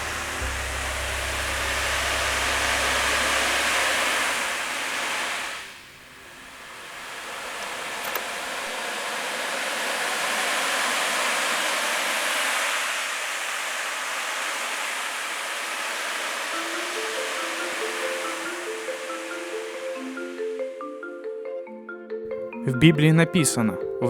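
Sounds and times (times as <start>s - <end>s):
rushing hissing noise: 0.0s - 20.9s.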